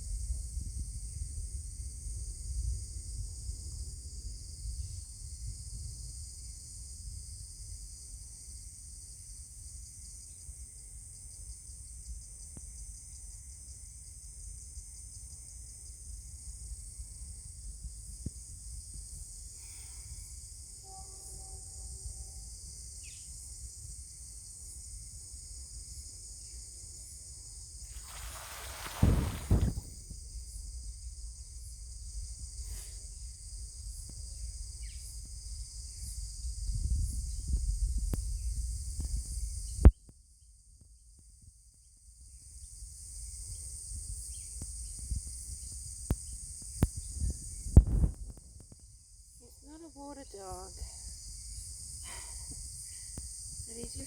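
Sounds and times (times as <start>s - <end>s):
insects shrilling: 27.9s - 30.0s.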